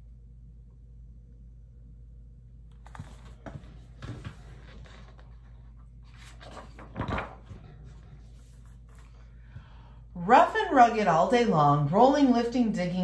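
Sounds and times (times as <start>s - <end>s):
book pages turning: 2.7s - 9.3s.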